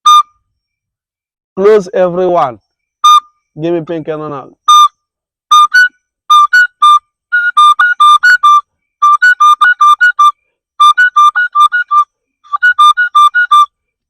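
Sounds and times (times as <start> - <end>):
wooden flute high notes: 0.0 - 0.4, 4.7 - 13.8.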